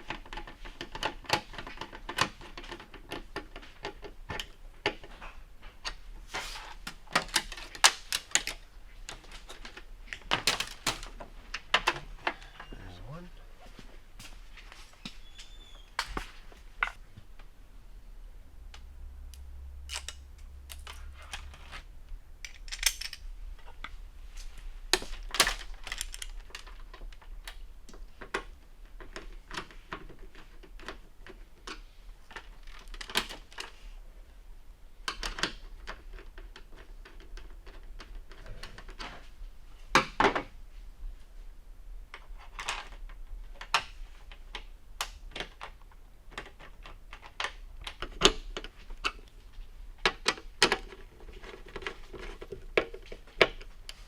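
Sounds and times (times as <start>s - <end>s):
small parts and tools clattering: 0.0s - 12.8s, 19.9s - 24.0s, 24.9s - 33.9s, 45.2s - 54.0s.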